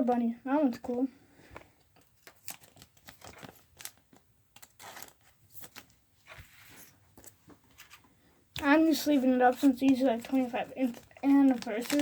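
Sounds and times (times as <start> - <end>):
cards and wrappers crinkling: 1.5 - 12.0.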